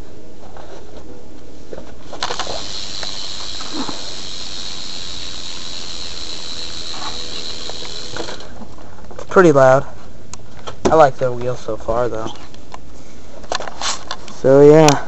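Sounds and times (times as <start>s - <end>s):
freewheeling bike hub clicking: 2.2s - 8.5s.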